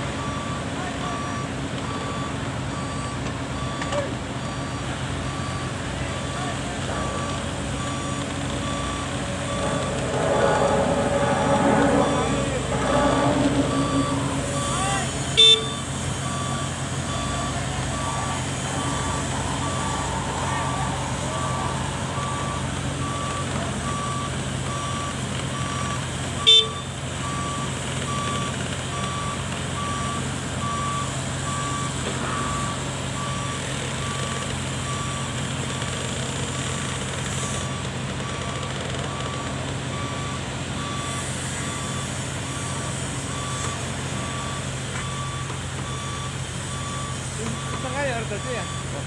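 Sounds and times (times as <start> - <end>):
excavator travel alarm beeping: 0.2 - 33.6, 41.7 - 49.0
diesel engine hum: 4.9 - 27.2.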